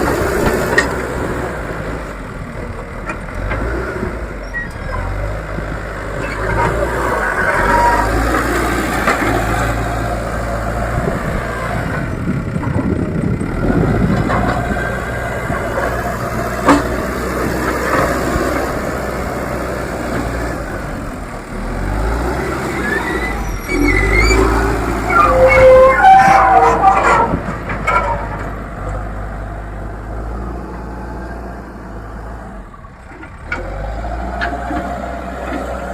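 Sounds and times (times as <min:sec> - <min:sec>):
backhoe diesel engine running: 0:00.0 - 0:35.9
high squeaks: 0:22.7 - 0:28.4.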